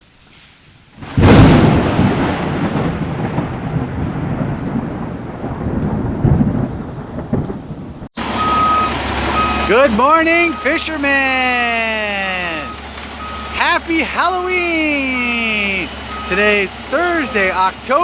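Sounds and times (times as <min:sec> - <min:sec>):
thunder cracking and rumbling: 0:01.0 - 0:08.1.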